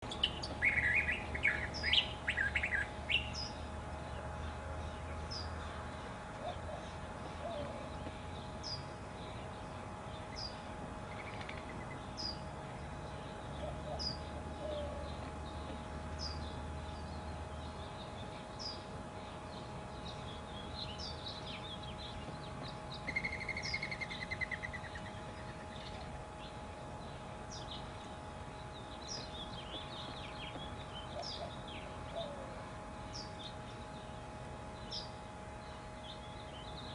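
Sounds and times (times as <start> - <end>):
birds chirping: 0.0 - 36.9
bird trill: 0.1 - 4.1, 13.1 - 28.0, 28.6 - 34.1.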